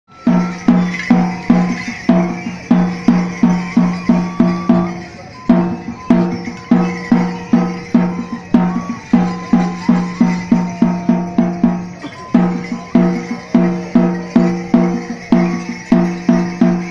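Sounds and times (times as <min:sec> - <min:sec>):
pitched drum beating: 0:00.1 - 0:16.9
thin high melody: 0:00.1 - 0:16.9.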